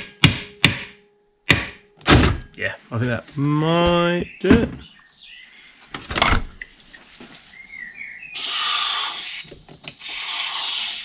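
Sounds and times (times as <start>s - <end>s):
aerosol can spraying: 8.4s - 11.0s.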